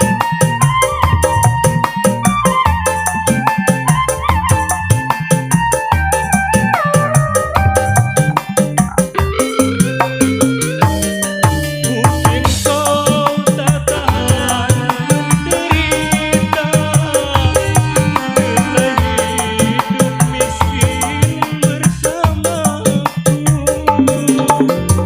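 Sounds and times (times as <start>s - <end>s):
fast hand drum rhythm: 0.0s - 25.0s
keyboard melody: 0.0s - 25.0s.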